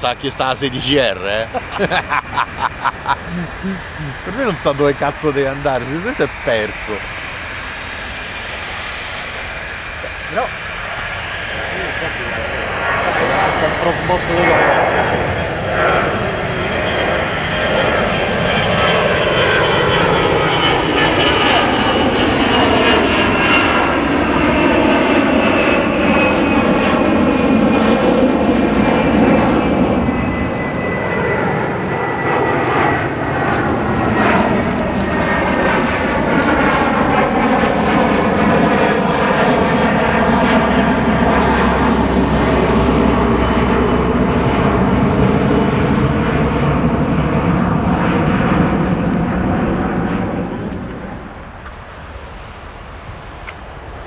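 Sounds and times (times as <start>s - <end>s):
airliner engines running: 0.0s - 54.0s.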